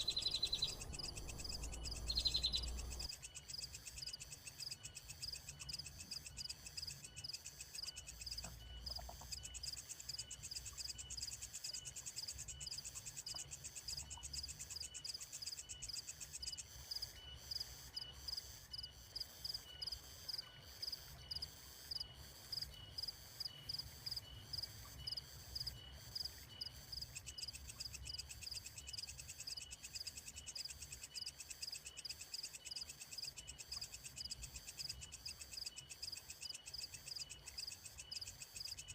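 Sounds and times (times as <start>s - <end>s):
very high insect trill: 0.0s - 3.6s
insect high chirp: 0.0s - 38.9s.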